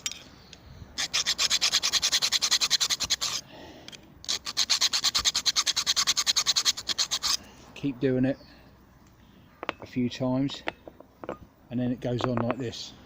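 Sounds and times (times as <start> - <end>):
hand file rasping on steel: 1.0 - 3.4, 4.3 - 7.4.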